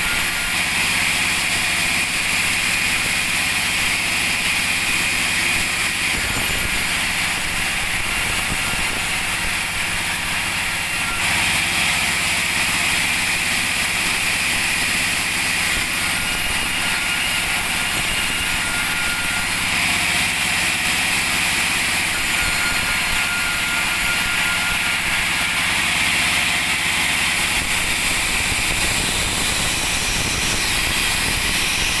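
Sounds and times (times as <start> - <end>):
chainsaw engine running: 0.0 - 22.3, 22.9 - 32.0.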